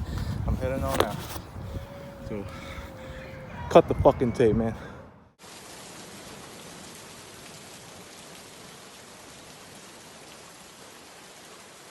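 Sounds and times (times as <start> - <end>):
falling rain hiss: 5.4 - 11.9.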